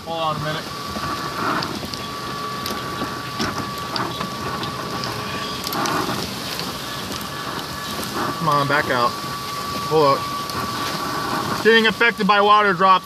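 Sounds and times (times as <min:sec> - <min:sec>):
heavy rain pouring: 0:00.0 - 0:13.0
raindrops tapping surfaces: 0:00.0 - 0:13.0
thin steady high tone: 0:00.0 - 0:13.0.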